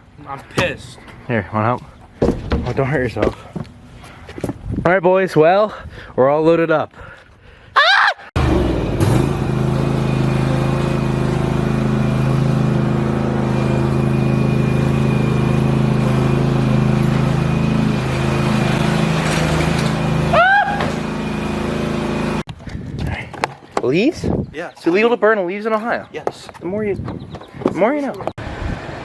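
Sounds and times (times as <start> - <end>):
vehicle engine running steadily: 8.4 - 22.4.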